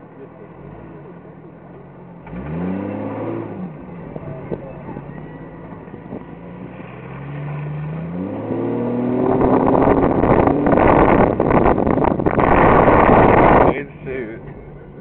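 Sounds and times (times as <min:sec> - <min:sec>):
engine revving: 0:02.2 - 0:14.7
rushing noise: 0:09.0 - 0:14.0.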